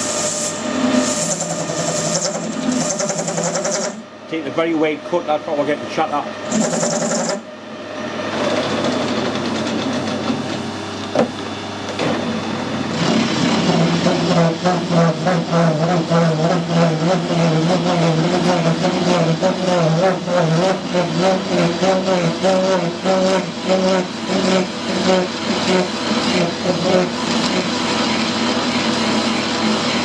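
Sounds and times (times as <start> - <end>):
wavering tool chatter: 6.5 - 7.4
metal lathe cutting: 12.9 - 30.0.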